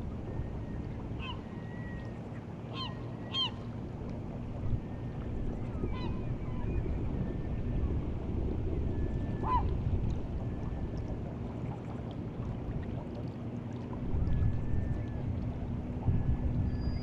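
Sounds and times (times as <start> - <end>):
sea water washing on shore: 0.0 - 17.0
faint whistled bird calls: 0.4 - 3.6, 5.6 - 7.5, 16.6 - 17.0.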